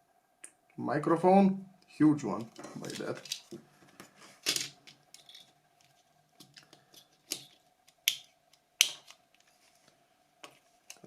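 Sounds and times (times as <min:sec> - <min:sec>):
phone parts clicking: 0:04.5 - 0:05.5.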